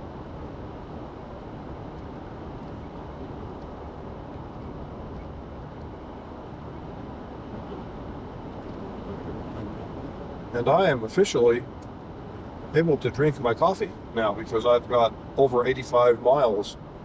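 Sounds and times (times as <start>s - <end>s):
car road noise from inside: 0.0s - 6.6s, 8.3s - 11.3s.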